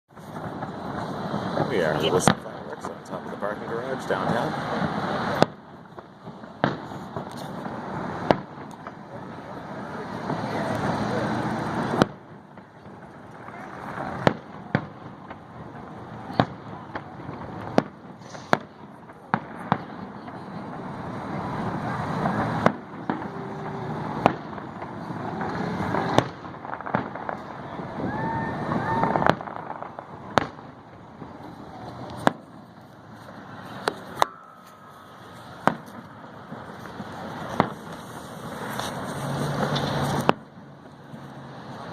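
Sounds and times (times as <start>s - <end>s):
firework shells bursting: 10.2s - 19.6s, 28.8s - 40.5s.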